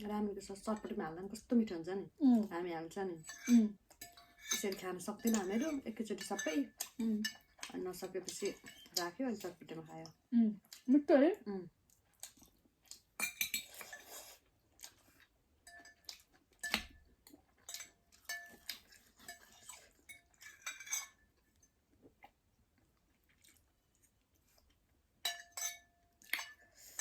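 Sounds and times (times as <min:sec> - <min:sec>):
cutlery clinking on dishes: 0:03.3 - 0:09.1, 0:13.2 - 0:14.2, 0:15.7 - 0:17.0, 0:17.6 - 0:21.8, 0:25.2 - 0:27.0
chewing: 0:11.8 - 0:20.6, 0:21.4 - 0:25.0.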